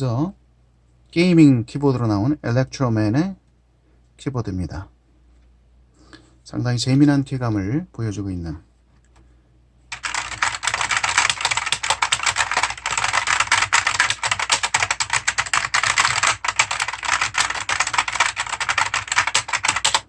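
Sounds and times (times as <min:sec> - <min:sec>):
clicky mechanical keyboard typing: 0:09.9 - 0:20.0.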